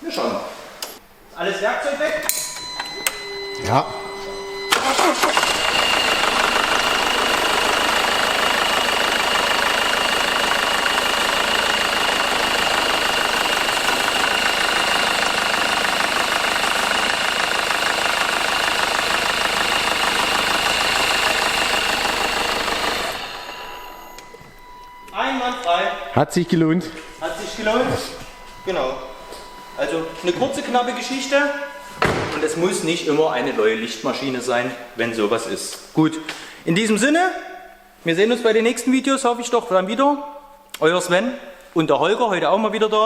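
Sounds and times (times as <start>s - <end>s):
thin high tone: 1.6s - 7.4s, 17.8s - 34.5s
car engine starting and idling: 2.6s - 34.5s.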